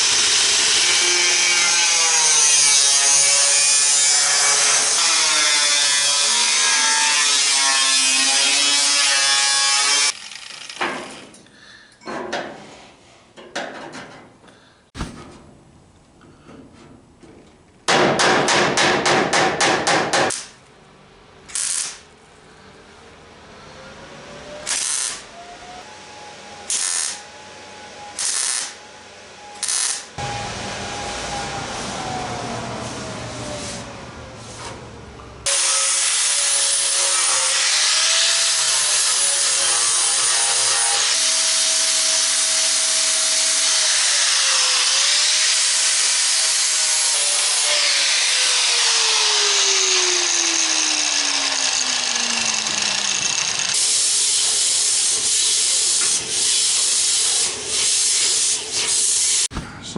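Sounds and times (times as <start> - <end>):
power tool running: 9.9 - 10.9, 45.9 - 55.3
loud strikes on metal: 15.0 - 15.7.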